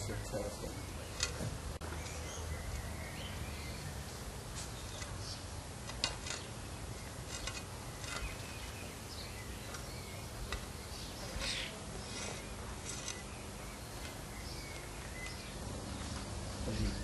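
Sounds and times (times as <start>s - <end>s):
faint bird chirps: 6.4s - 17.0s.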